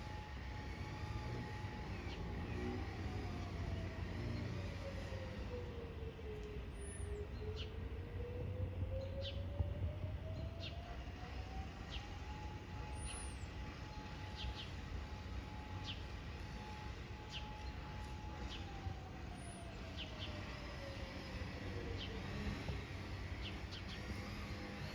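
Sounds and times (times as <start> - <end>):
fire siren: 0.0 - 24.9.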